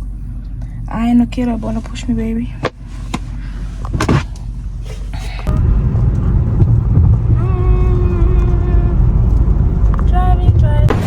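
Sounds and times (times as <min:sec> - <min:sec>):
car driving rumble: 0:00.0 - 0:11.0
clicks and knocks: 0:02.6 - 0:04.4.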